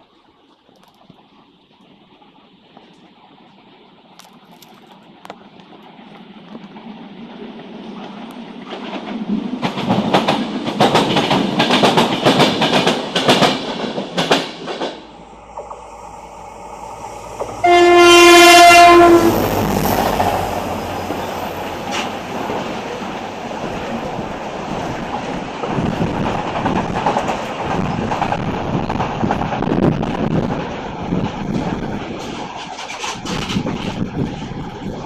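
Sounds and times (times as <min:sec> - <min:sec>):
train wheels clattering on rails: 0:06.4 - 0:16.1, 0:17.4 - 0:35.0
train horn blast: 0:15.0 - 0:22.2.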